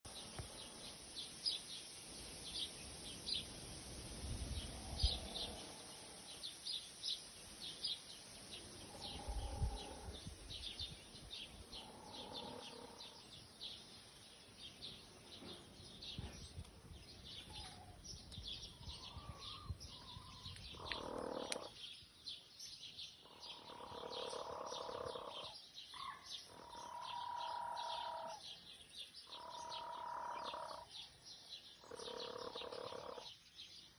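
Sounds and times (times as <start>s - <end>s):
small birds chirping: 0.0s - 33.9s
chickens calling softly: 18.9s - 21.8s, 29.3s - 30.9s.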